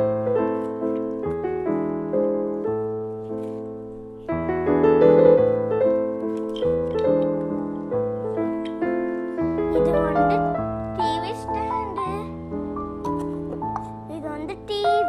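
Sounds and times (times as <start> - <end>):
gentle piano chords: 0.0 - 15.0.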